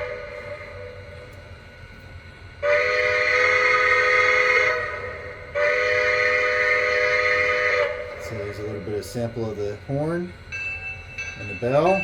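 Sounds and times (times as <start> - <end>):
steam whistle blast: 2.6 - 8.2.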